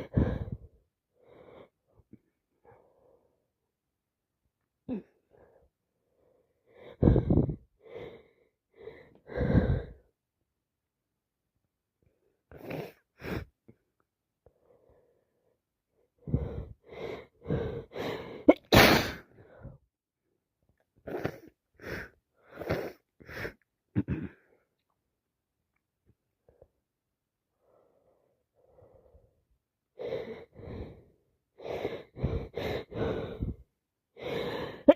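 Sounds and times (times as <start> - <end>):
gasping breaths: 0.0 - 1.8, 4.9 - 10.1, 16.2 - 18.5, 30.0 - 34.9
woman sneezing: 18.5 - 19.2.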